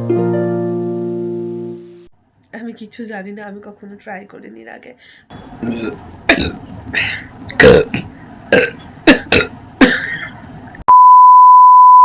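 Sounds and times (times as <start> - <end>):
person burping: 5.6 - 10.5.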